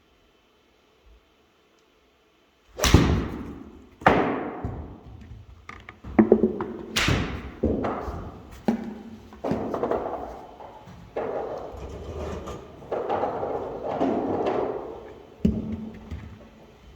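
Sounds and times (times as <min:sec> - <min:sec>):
golf club hitting ball: 0:02.8 - 0:05.0, 0:06.1 - 0:10.3.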